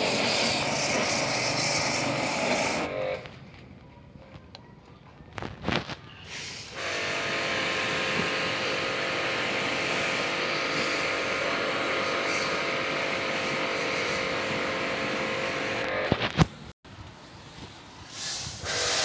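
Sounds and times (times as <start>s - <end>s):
water spray hiss: 0.0s - 2.9s, 18.1s - 19.0s
pressure washer motor hum: 0.0s - 3.0s, 6.8s - 16.0s.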